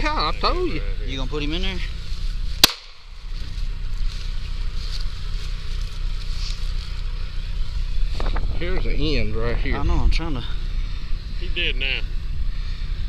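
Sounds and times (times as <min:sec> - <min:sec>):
engine idling: 0:00.0 - 0:13.0
pistol shot: 0:02.6 - 0:03.0.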